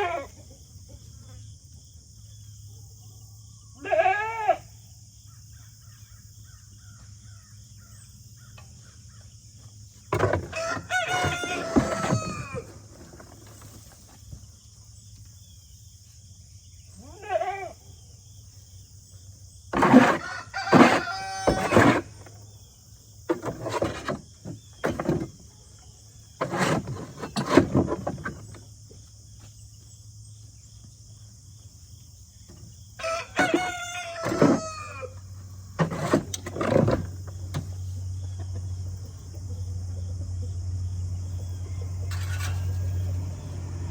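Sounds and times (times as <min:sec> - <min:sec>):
rooster crowing: 0:10.4 - 0:12.9, 0:20.0 - 0:22.0, 0:33.0 - 0:35.2.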